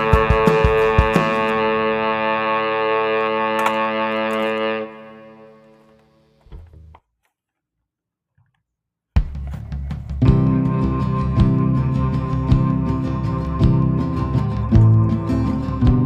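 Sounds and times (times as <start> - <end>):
distorted guitar chord: 0.0 - 6.0, 10.2 - 16.0.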